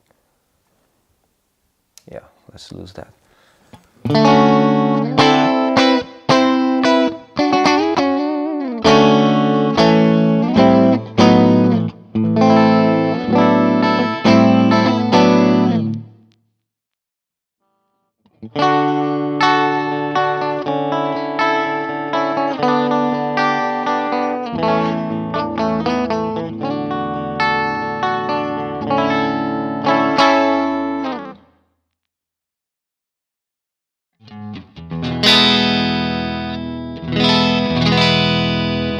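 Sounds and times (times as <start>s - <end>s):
electric guitar through an amp: 4.0s - 16.2s, 18.4s - 31.4s, 34.2s - 38.9s.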